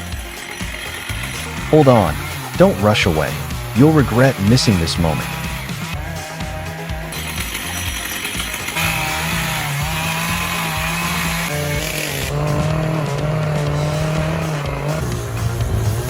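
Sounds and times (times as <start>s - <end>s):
background music: 0.0s - 16.0s
small engine running hard: 0.0s - 16.0s.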